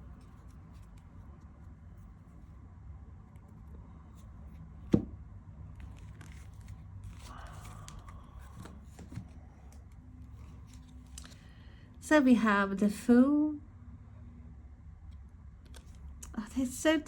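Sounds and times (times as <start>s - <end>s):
cards and packaging rustling: 5.7s - 11.6s.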